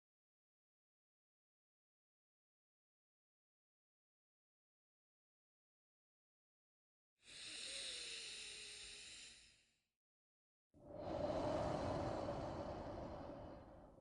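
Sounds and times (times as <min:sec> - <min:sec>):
person breathing deeply: 0:10.8 - 0:14.0.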